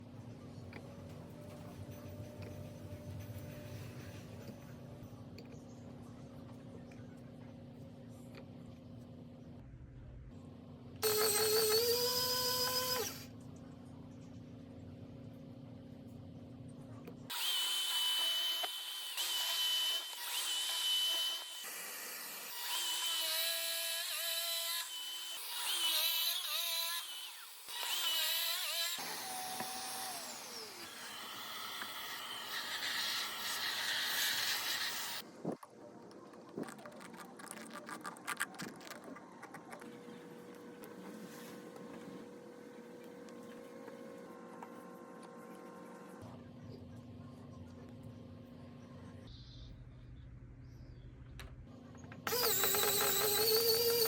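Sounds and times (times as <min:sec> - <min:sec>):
power tool motor whirring: 0:11.0 - 0:13.3, 0:17.3 - 0:35.2, 0:52.2 - 0:54.0.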